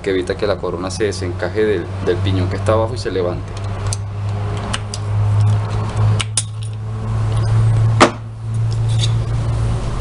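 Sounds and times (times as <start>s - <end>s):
steady low hum: 0.0s - 10.0s
metal parts and tools clinking: 5.4s - 7.6s.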